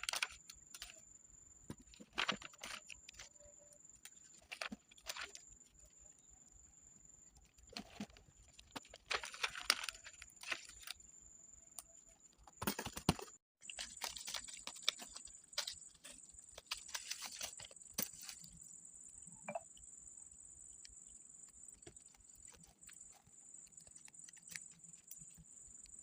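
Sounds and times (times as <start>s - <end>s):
paper and stationery handling: 0.0s - 1.0s, 1.7s - 3.4s, 4.1s - 5.4s, 7.5s - 11.0s, 12.6s - 18.6s, 21.7s - 25.5s.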